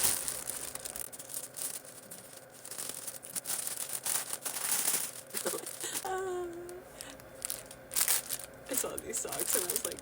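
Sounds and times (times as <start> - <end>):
packaging torn and crinkled: 0.0 - 6.2, 7.0 - 10.0.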